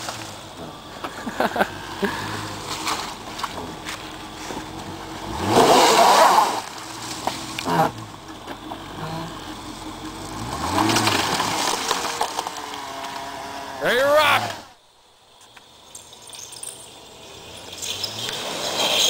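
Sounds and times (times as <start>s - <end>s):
car engine revving: 0.0s - 14.8s.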